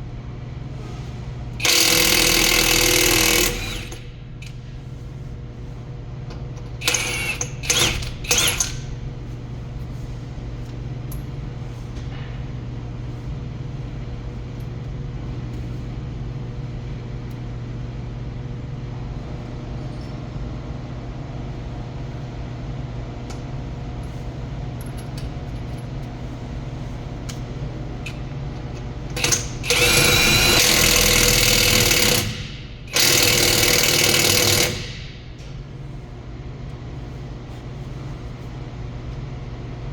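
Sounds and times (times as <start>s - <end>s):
steady low hum: 0.0s - 39.9s
impact wrench hammering: 1.6s - 4.0s, 29.2s - 35.2s.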